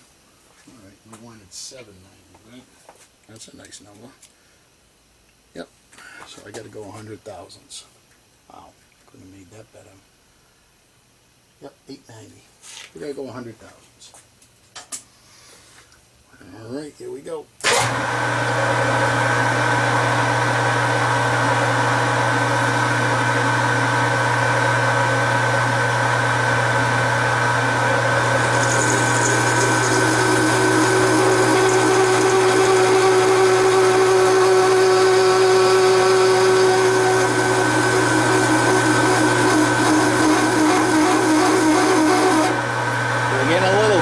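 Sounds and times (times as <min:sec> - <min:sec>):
metal lathe cutting: 0:17.7 - 0:44.0.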